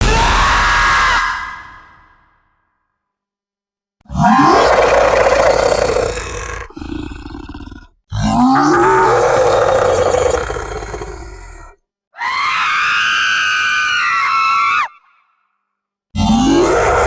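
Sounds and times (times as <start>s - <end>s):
horror screams: 0.0s - 2.1s, 4.1s - 14.9s, 16.2s - 17.0s
voice groaning into a yell: 4.1s - 11.8s, 16.2s - 17.0s.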